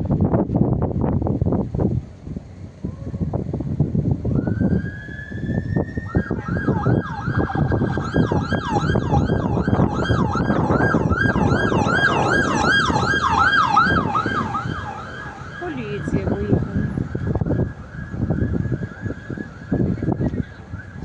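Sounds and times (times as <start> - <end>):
road traffic rumble: 0.0 - 21.0
police siren wailing: 4.2 - 21.0.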